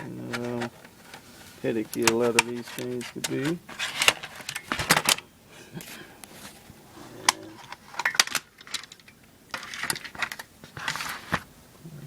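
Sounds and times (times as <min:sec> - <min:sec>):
plastic casing clicks and rattles: 0:01.8 - 0:05.2, 0:07.6 - 0:10.5
plastic snapping: 0:01.8 - 0:05.2.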